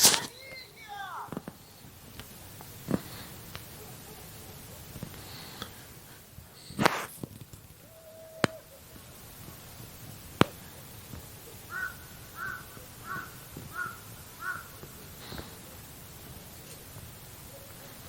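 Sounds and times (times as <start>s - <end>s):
crow cawing: 11.7s - 14.8s.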